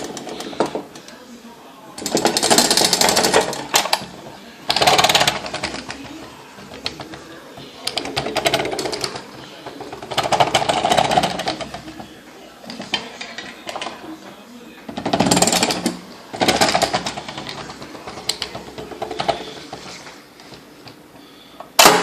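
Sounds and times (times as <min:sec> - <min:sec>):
toy bulldozer mechanical clatter: 0:02.0 - 0:14.0, 0:14.9 - 0:20.1.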